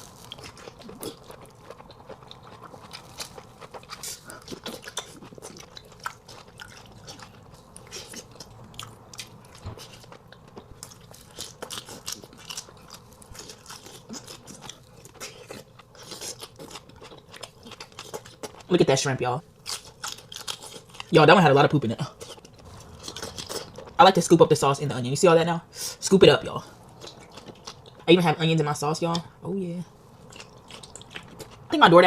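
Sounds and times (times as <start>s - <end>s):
chewing and biting: 0.0s - 18.7s, 19.6s - 21.1s, 22.0s - 24.4s, 26.9s - 28.1s, 30.2s - 31.7s.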